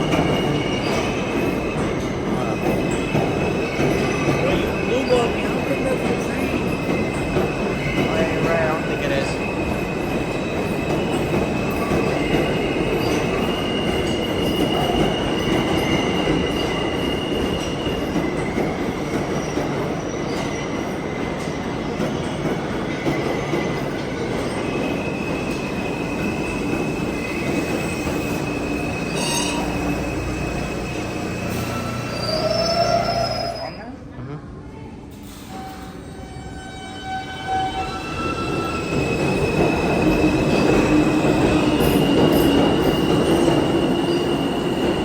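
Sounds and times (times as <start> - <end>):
subway train rumble: 0.0 - 45.0
steel wheel squeal: 24.4 - 34.0.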